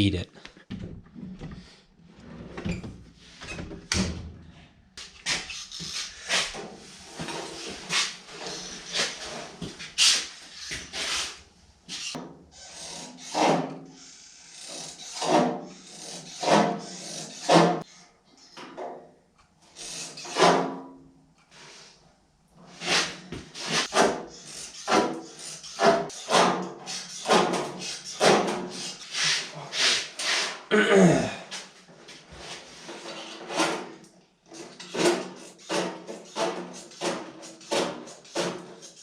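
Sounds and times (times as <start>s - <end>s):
hand tool rasping on sheet metal: 5.3s - 17.8s, 19.8s - 20.7s, 22.7s - 30.7s, 32.6s - 39.0s.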